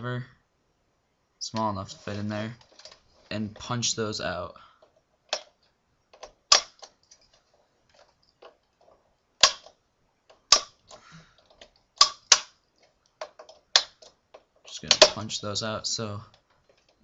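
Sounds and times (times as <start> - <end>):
plastic latches snapping: 6.2 - 7.0, 9.4 - 12.5, 13.2 - 14.2.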